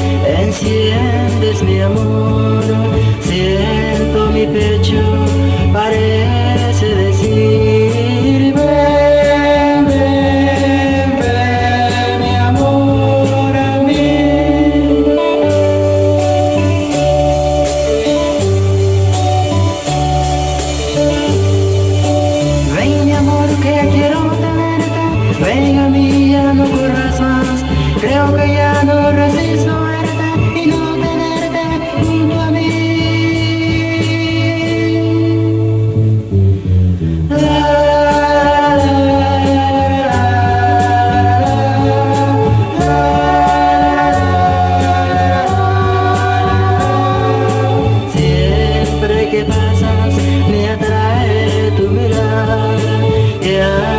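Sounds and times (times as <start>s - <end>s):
bass line: 0.0s - 53.9s
guitar chords: 0.0s - 53.9s
keyboard chords: 0.0s - 53.9s
romantic ballad music: 0.0s - 53.9s.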